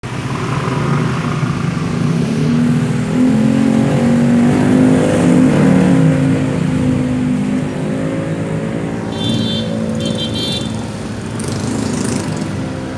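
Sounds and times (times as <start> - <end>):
scooter two-stroke engine running: 8.8 - 12.9.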